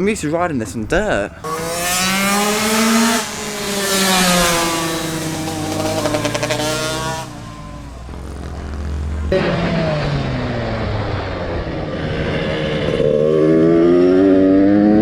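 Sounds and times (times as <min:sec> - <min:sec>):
motocross bike engine revving: 0:01.0 - 0:10.6.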